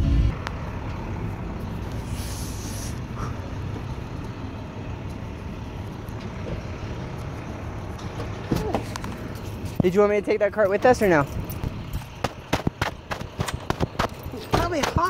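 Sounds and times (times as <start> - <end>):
vehicle rumble: 0.0 - 15.0
brief high hiss: 2.0 - 3.0.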